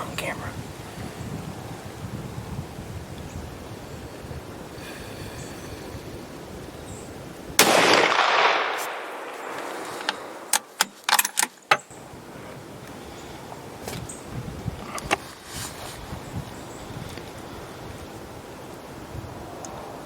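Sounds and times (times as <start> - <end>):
gunshot: 7.6 - 10.5.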